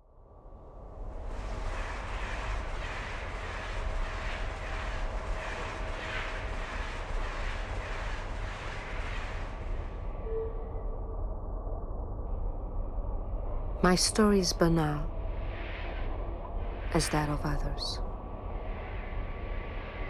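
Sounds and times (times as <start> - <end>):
faint steady hum: 9.9 - 20.0.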